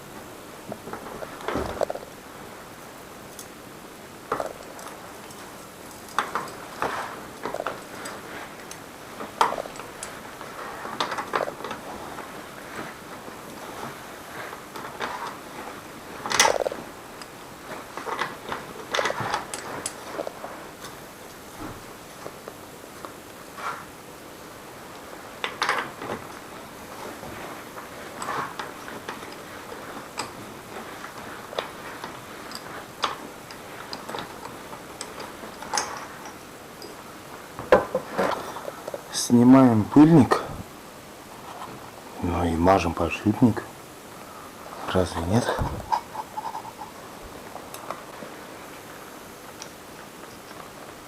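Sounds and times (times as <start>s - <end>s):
metal parts clicking and knocking: 16.2s - 17.3s.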